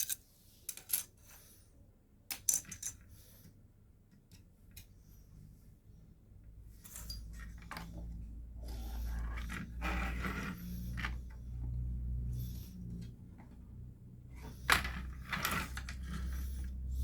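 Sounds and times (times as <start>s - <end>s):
metal computer parts clinking: 0.0s - 1.2s, 2.3s - 3.0s.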